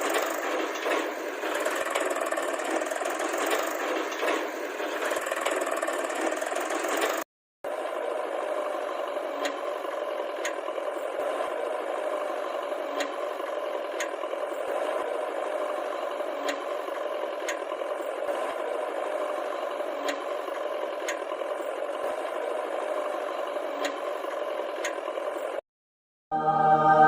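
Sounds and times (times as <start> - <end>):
toy motor whirring: 0.0 - 7.3.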